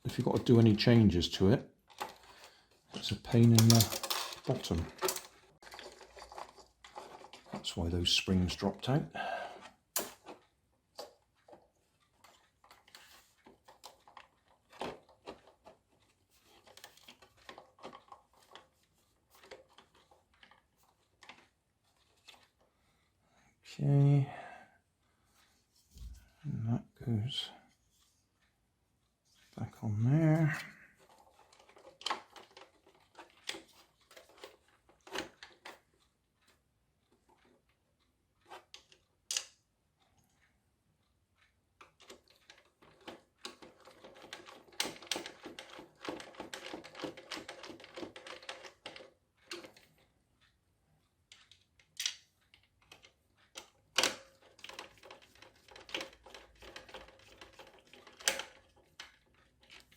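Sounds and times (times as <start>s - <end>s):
plastic toy car clicks and clatter: 0.1s - 8.8s, 9.6s - 22.7s, 30.4s - 37.6s, 38.4s - 39.6s, 41.8s - 50.0s, 51.3s - 59.9s.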